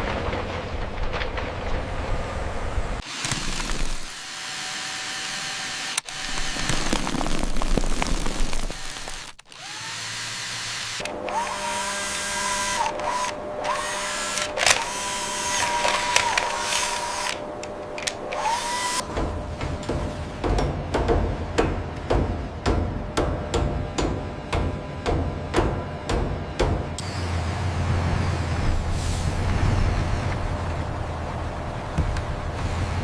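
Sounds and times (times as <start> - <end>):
machinery noise: 8.6 - 20.4.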